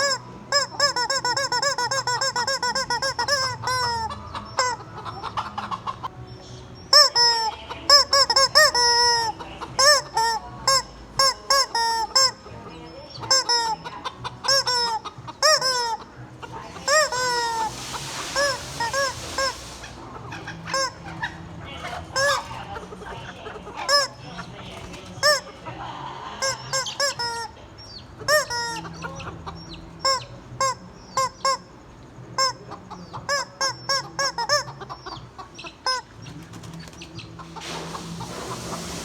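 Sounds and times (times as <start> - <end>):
squeaky toy squawking: 0.0 - 6.1, 6.9 - 24.4, 25.2 - 25.5, 26.4 - 36.2
breathy hiss: 16.6 - 20.3, 37.5 - 39.0.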